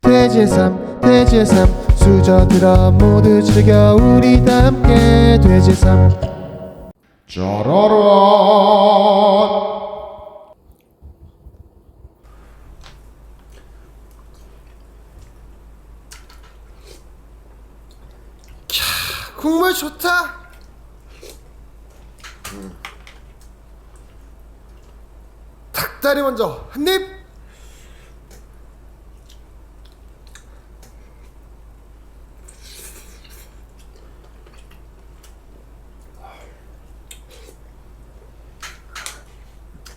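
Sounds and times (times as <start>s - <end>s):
person chewing: 13.4s - 15.4s, 17.8s - 19.1s, 20.5s - 25.0s, 28.3s - 31.4s, 32.4s - 37.7s
wet mouth clicks: 29.2s - 31.0s, 37.0s - 37.6s.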